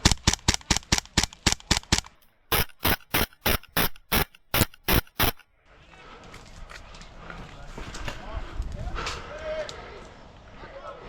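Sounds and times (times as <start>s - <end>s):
airsoft gun shots clicking: 0.0s - 5.4s.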